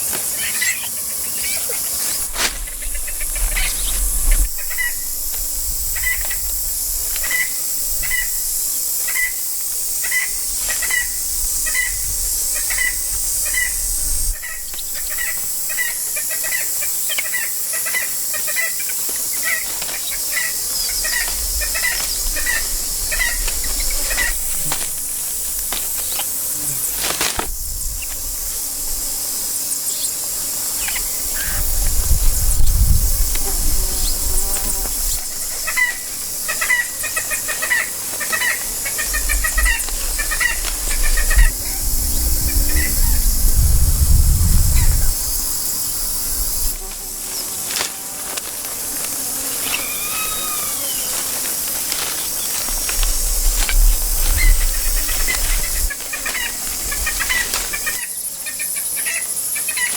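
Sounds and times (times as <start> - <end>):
steady high hiss: 0.0 - 59.9.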